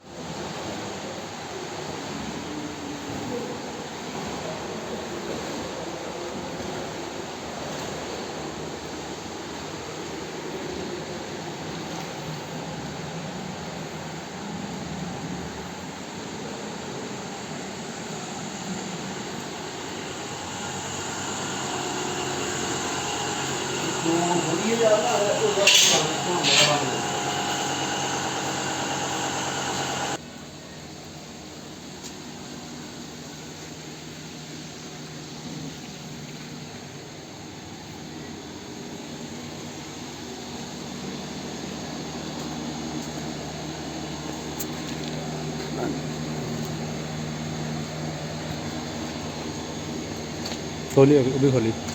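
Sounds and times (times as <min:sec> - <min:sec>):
machine whooshing hum: 0:14.5 - 0:30.2.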